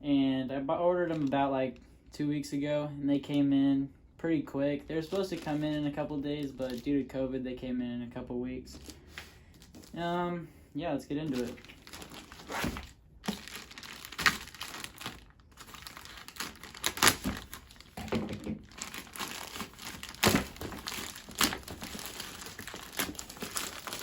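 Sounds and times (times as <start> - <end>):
packaging crinkling and rustling: 1.0 - 1.5, 4.9 - 6.9, 8.7 - 10.2, 11.2 - 24.0
packaging tearing: 11.3 - 24.0.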